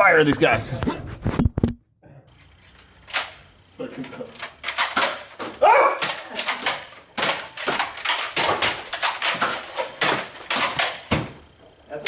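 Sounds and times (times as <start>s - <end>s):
toy blasters clicking and snapping: 3.0s - 3.4s, 4.3s - 11.1s.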